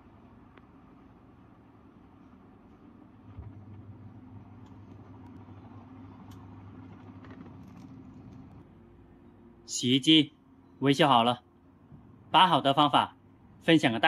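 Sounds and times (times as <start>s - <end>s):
washing machine spinning: 0.0s - 9.0s.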